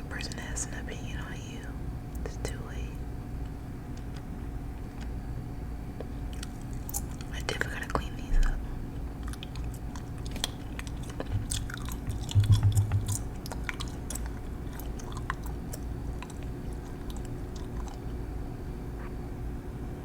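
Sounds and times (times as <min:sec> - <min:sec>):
low bump: 0:11.3 - 0:13.3.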